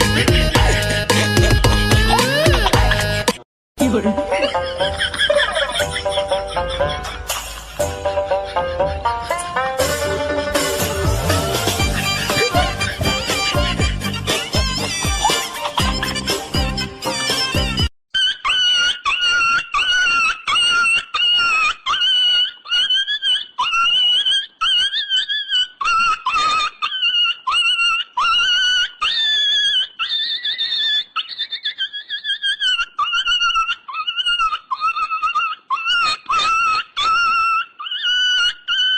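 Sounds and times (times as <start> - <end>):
high-pitched squealing cries: 11.1 - 38.9.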